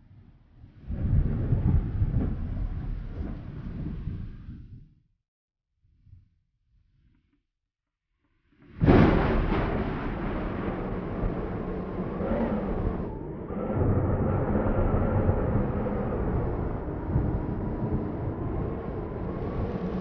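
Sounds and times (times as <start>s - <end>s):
storm wind buffeting microphone: 0.6s - 4.8s, 8.8s - 20.0s.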